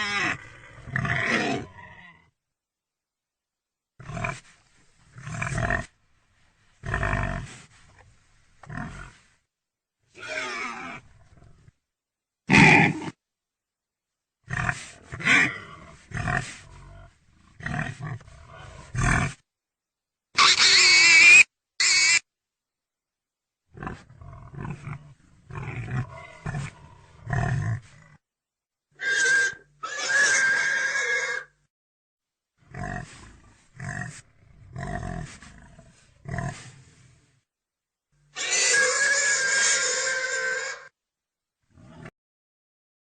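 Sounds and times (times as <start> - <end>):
pig squealing: 0.0 - 1.7, 12.5 - 13.1, 20.4 - 22.2, 29.0 - 31.6, 38.3 - 40.9
pig grunting: 0.0 - 2.3, 5.2 - 5.9, 6.8 - 7.6, 8.6 - 9.2, 12.5 - 13.2, 14.5 - 19.4, 23.7 - 28.2, 32.7 - 36.9, 41.7 - 42.1.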